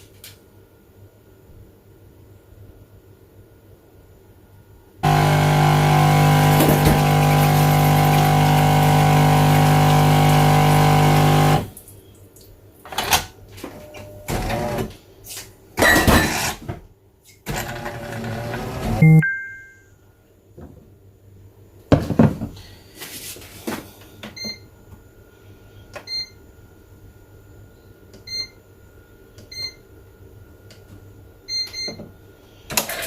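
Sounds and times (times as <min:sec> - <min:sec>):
coffee machine humming: 0:05.0 - 0:11.7, 0:14.3 - 0:15.0, 0:17.5 - 0:19.2.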